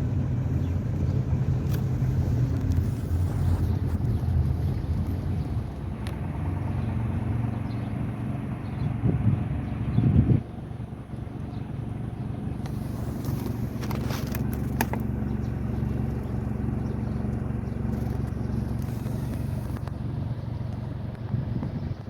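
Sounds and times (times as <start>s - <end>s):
vehicle engine running: 0.0s - 22.0s.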